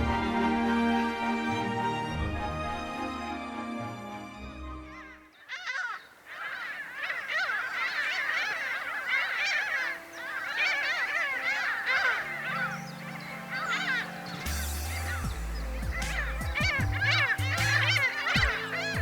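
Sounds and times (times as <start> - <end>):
flock of birds calling: 0.0 - 3.6, 4.6 - 19.0
background music: 0.0 - 5.3, 9.4 - 19.0.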